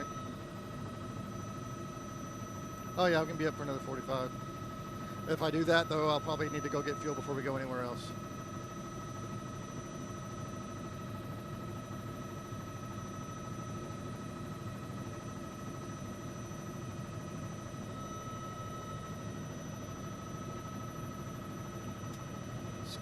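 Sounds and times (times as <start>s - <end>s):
helicopter engine and rotor noise: 0.0s - 23.0s.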